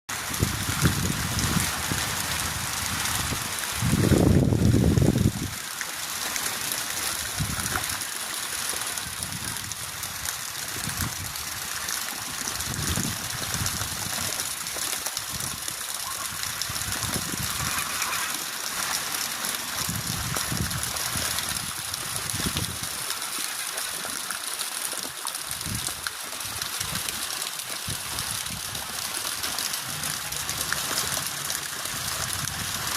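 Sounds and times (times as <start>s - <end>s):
strong gusty wind: 0.3s - 5.5s, 12.6s - 14.3s, 15.3s - 18.3s, 19.8s - 22.8s
wind buffeting microphone: 0.3s - 5.5s, 12.6s - 14.4s, 15.2s - 18.2s, 19.8s - 23.0s, 25.5s - 25.9s, 29.8s - 32.9s.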